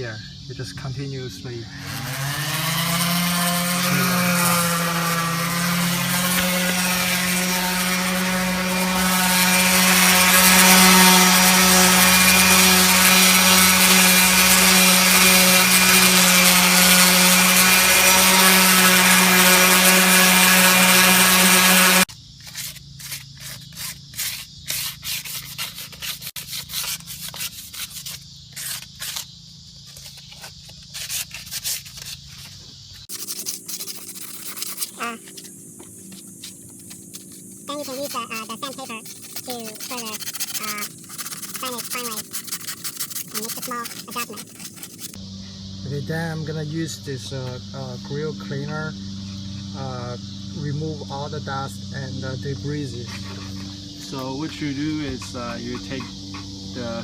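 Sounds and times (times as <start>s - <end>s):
orbital sander on metal: 1.7s - 22.1s, 33.0s - 45.2s
scraping strokes on metal: 1.8s - 29.3s, 33.0s - 45.2s.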